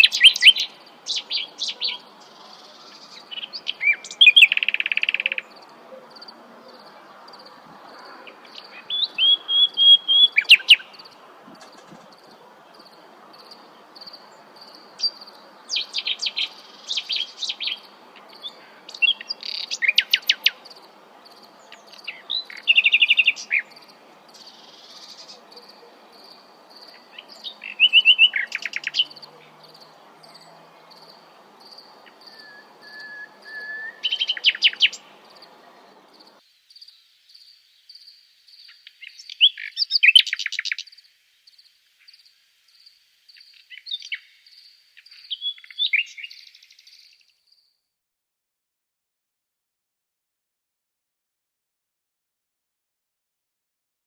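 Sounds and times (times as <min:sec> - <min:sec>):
low background hiss: 0:00.0 - 0:47.3
nightingale singing: 0:00.0 - 0:47.6.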